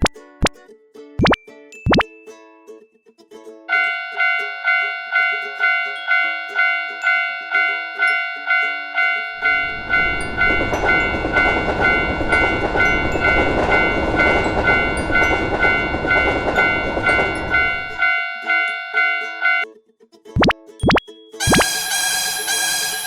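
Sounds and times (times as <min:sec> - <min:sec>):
railroad crossing bell ringing: 0:03.7 - 0:19.6, 0:21.4 - 0:23.0
train rushing past: 0:07.4 - 0:19.5.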